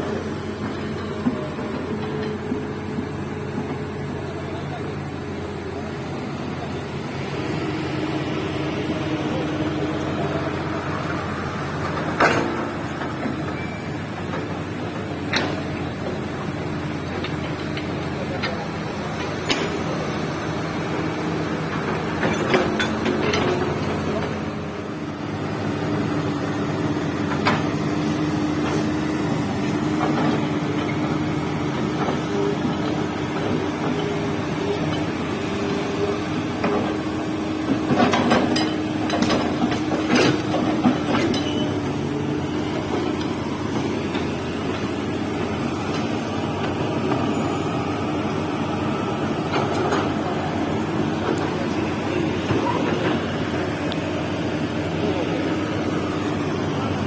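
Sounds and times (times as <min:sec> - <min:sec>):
excavator engine running: 0:00.0 - 0:57.0.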